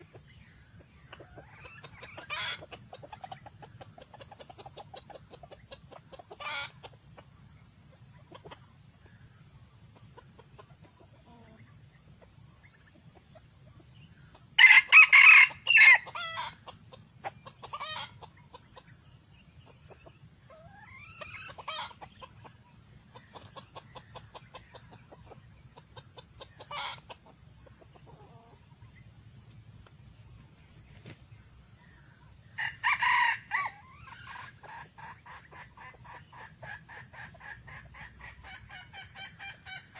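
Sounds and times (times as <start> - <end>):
distant junglefowl crows: 0.0 - 6.9, 14.6 - 19.0, 19.9 - 25.4, 26.0 - 27.4, 31.8 - 39.9
junglefowl crowing loudly: 1.4 - 2.6, 14.6 - 16.6, 32.6 - 34.5.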